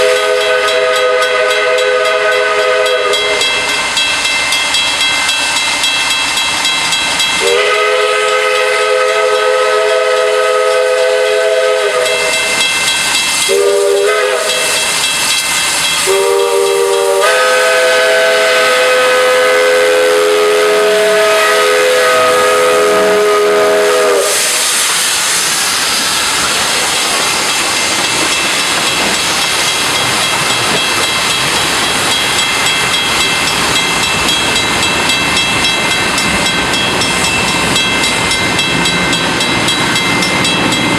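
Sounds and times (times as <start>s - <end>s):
steam locomotive whistle: 0.0s - 3.7s, 7.4s - 26.8s
steam hissing: 0.0s - 40.9s.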